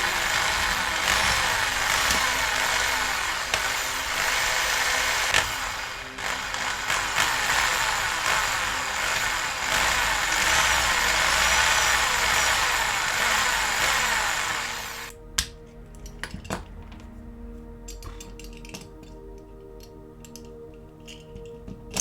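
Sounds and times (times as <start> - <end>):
power drill drilling metal: 0.0 - 15.1
small metal clicks: 15.4 - 17.1, 17.8 - 22.0.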